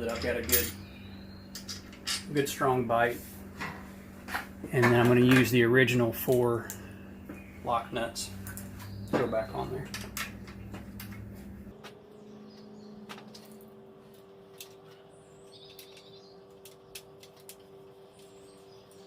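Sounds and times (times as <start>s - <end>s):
faint steady hum: 0.0s - 19.0s
bird chirping: 0.2s - 1.7s, 6.7s - 11.0s, 11.7s - 19.0s.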